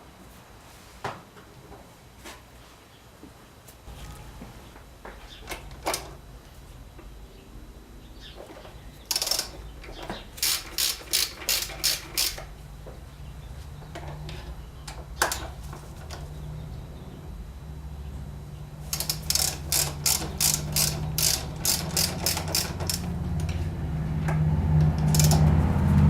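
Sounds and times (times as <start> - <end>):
ratchet wrench clicking: 9.1 - 12.5, 18.9 - 23.6, 24.9 - 25.5
low hum: 12.2 - 26.0.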